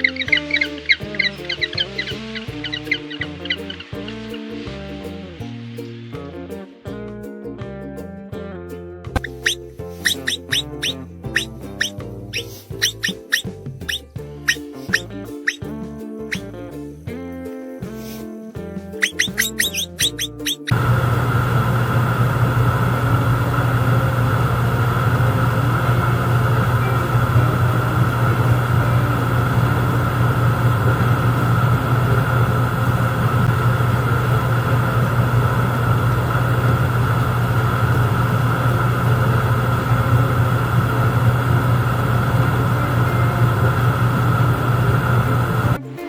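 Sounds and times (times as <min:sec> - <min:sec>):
low mechanical hum: 0:18.6 - 0:45.8.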